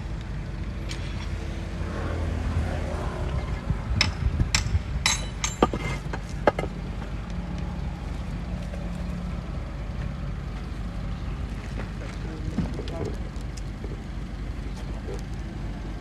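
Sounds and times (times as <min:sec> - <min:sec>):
heavy machinery diesel engine: 0:00.0 - 0:16.0
sharp knocks and clatters: 0:04.0 - 0:07.4.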